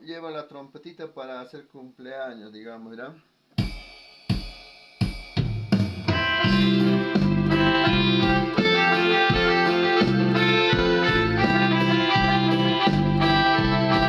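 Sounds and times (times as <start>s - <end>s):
keyboard accompaniment with drum beat: 3.5s - 14.0s
drum hits: 3.6s - 14.0s.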